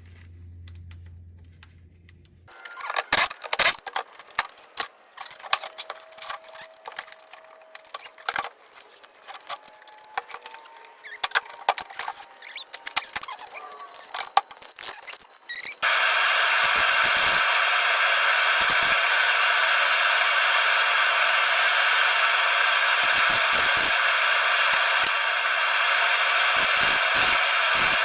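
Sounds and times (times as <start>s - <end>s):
faint squeaks: 5.2s - 15.8s.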